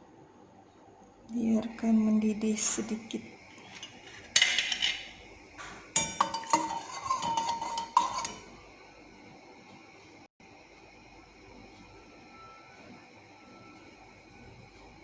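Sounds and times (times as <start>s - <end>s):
metal cookware clattering: 3.5s - 8.6s.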